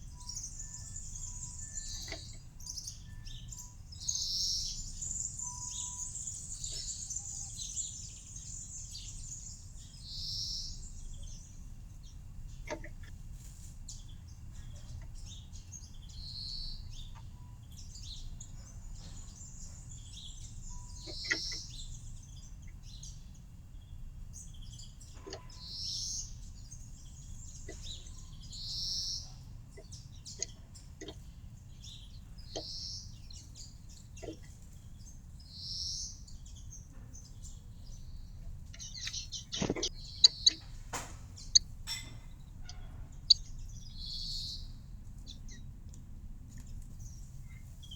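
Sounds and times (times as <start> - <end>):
low background hum: 0.0 - 47.9
small birds chirping: 0.0 - 47.9
sharp clicks: 38.8 - 41.7.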